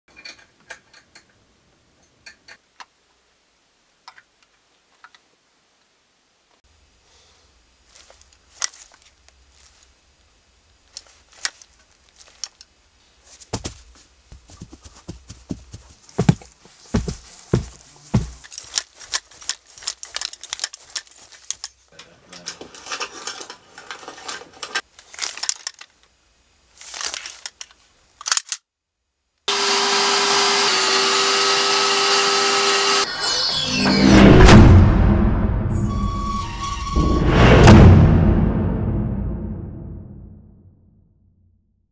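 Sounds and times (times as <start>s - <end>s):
rustling and scraping: 7.8s - 10.1s, 10.8s - 26.1s, 26.7s - 28.6s
low thumps: 33.7s - 40.8s.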